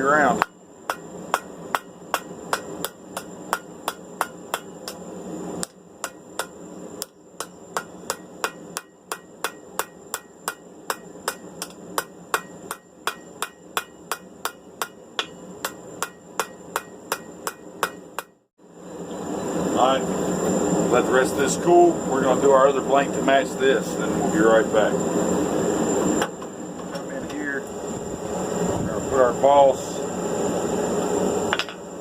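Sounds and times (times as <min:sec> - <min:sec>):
hammer striking steel on anvil: 0:00.3 - 0:05.0, 0:05.6 - 0:18.4.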